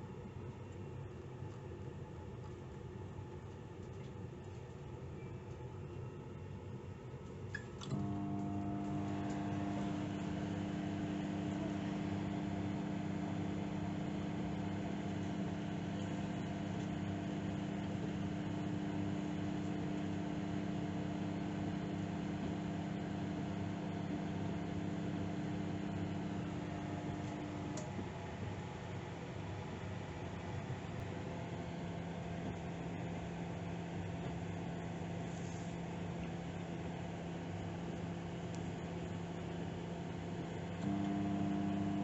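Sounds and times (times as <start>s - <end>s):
microwave fan noise: 0.0s - 42.0s
microwave oven humming: 0.0s - 42.0s
microwave oven click: 7.5s - 28.4s, 40.1s - 42.0s.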